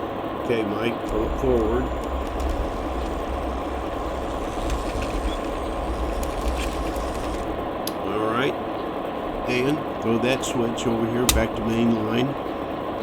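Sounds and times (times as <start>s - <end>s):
faint clicks: 1.0s - 8.1s, 10.4s - 12.8s
toy train motor rumbling: 1.0s - 8.2s, 9.3s - 12.8s.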